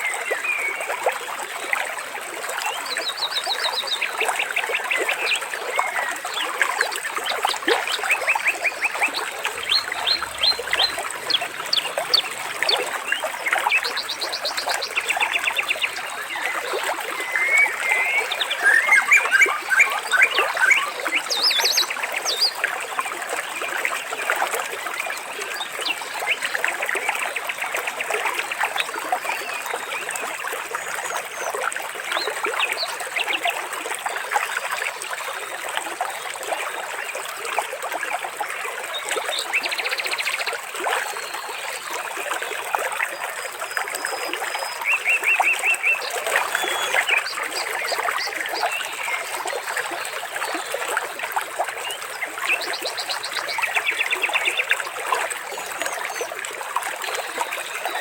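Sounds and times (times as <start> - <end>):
trickling water: 0.0 - 58.0
birds chirping and trilling: 8.0 - 16.5.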